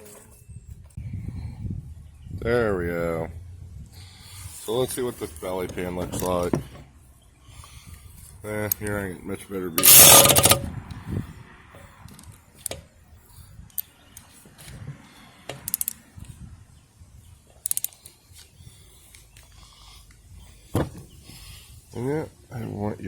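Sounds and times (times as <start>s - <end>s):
camera handling rustling clatter: 9.8s - 10.7s
sharp clicks and knocks: 9.8s - 10.7s.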